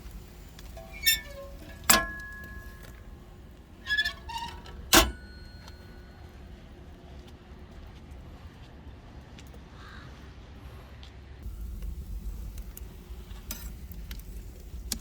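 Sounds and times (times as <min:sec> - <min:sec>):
sharp ringing clinks and knocks: 0:00.7 - 0:03.1, 0:03.9 - 0:06.2.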